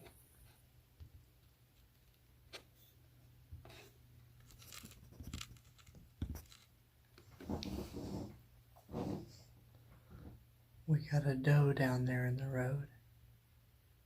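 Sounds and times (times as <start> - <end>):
rustling and handling clicks: 4.4 - 7.7.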